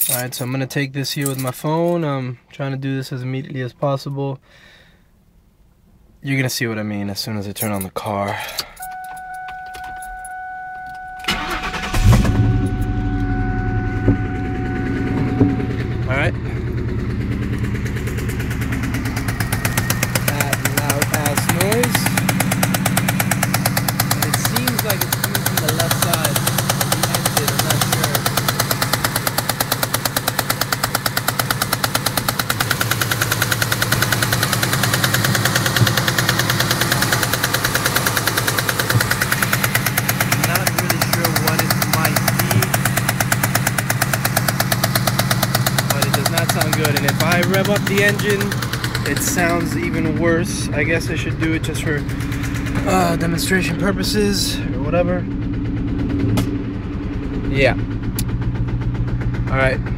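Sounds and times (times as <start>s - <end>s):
car starter cranking: 8.4s - 59.9s
steady high tone: 8.8s - 22.1s, 45.9s - 59.9s
car engine idling with knocking: 11.3s - 59.9s.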